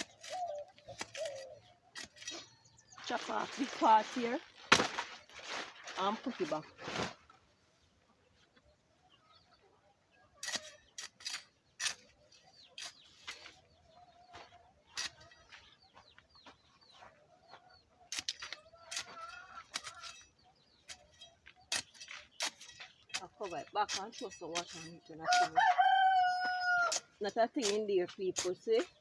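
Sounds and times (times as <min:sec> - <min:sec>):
digging in garden soil: 0:00.0 - 0:07.5, 0:10.3 - 0:29.0
chickens clucking: 0:11.6 - 0:22.4.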